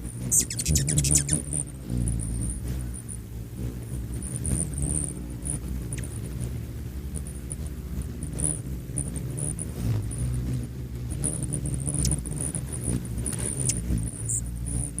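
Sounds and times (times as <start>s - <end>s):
hummingbird wings humming: 0.0s - 15.0s
short high bird chirps: 0.3s - 1.4s.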